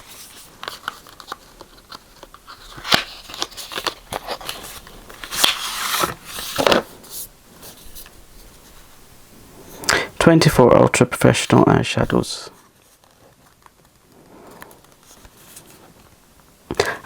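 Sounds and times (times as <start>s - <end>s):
packaging rustling: 0.0s - 8.7s, 12.7s - 16.6s
packaging clicks and crackles: 0.1s - 5.7s.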